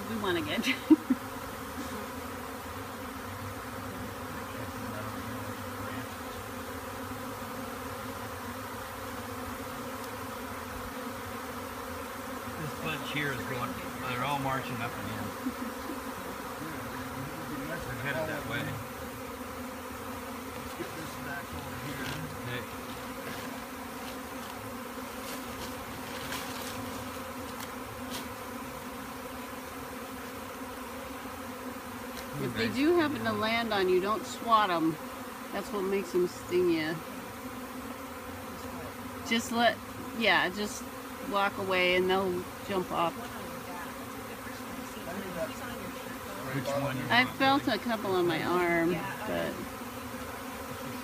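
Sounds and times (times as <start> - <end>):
bees buzzing: 0.0 - 51.0.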